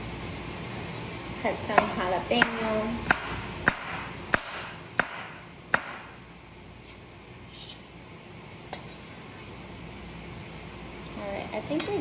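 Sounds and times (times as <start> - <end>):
knife chopping on cutting board: 1.8 - 6.1.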